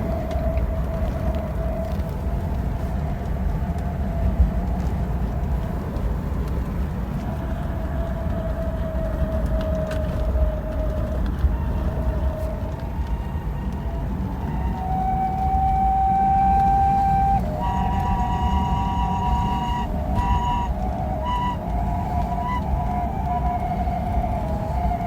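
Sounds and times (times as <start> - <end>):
road and drivetrain rumble: 0.0 - 25.0.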